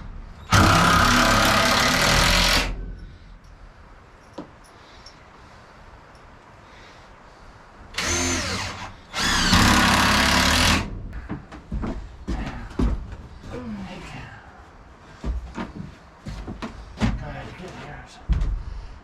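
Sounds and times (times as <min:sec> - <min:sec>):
cordless drill whirring: 0:00.5 - 0:02.8, 0:08.0 - 0:10.9
knocks and clicks of wood and tools: 0:09.4 - 0:13.4, 0:15.2 - 0:17.3, 0:18.2 - 0:18.8.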